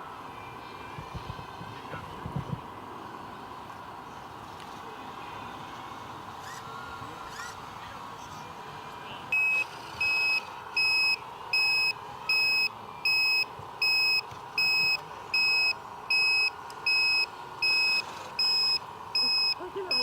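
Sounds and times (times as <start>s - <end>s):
faint steady hum: 0.0s - 20.0s
reversing alarm beeping: 9.3s - 20.0s.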